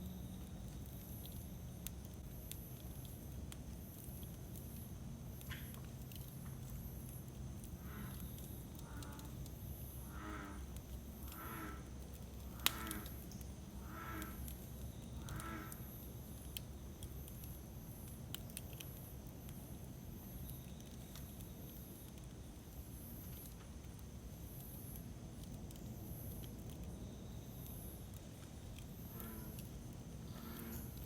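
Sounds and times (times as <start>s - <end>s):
campfire crackling and popping: 0.1s - 31.0s
crow cawing: 12.6s - 13.1s, 15.3s - 15.8s.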